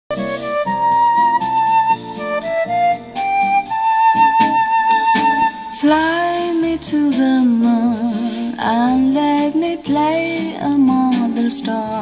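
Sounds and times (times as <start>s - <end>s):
flute playing slow melody: 0.1s - 6.4s
soft plucked accompaniment: 0.1s - 12.0s
woman singing: 5.8s - 12.0s.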